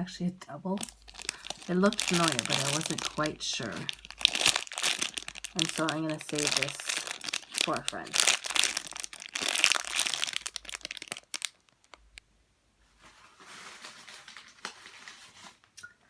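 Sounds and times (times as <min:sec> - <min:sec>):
plastic packaging crinkling: 0:00.8 - 0:12.2, 0:13.0 - 0:15.7.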